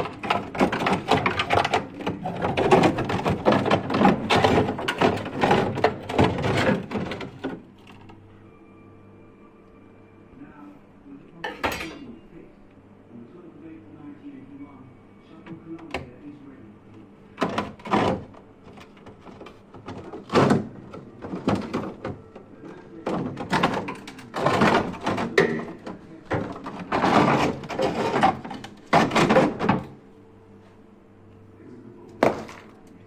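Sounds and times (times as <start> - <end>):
refrigerator drawers knocking: 0.0 - 8.1, 17.3 - 30.0, 32.2 - 32.8
refrigerator hum: 0.0 - 33.0.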